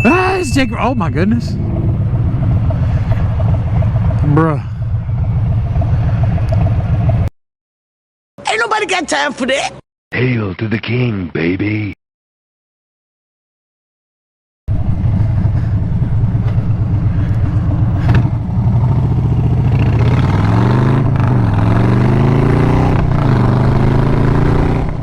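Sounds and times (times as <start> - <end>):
motorcycle engine accelerating: 0.0 - 7.3, 14.7 - 25.0.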